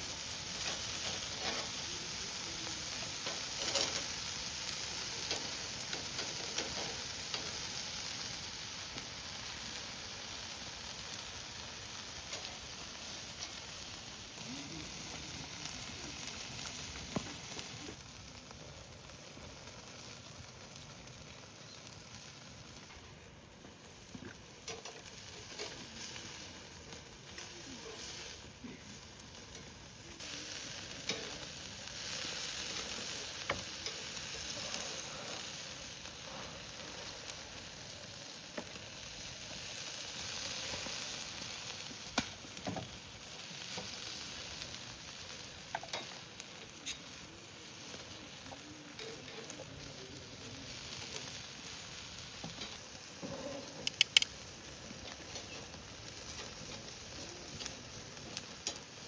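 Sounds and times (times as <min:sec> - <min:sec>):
food sizzling: 0:00.0 - 0:59.0
sharp clicks: 0:53.8 - 0:54.4.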